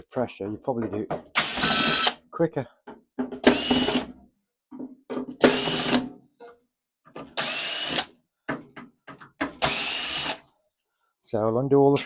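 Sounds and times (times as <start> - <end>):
power drill spinning: 1.4 - 2.2, 3.4 - 4.1, 5.4 - 6.0, 7.3 - 8.1, 9.6 - 10.5.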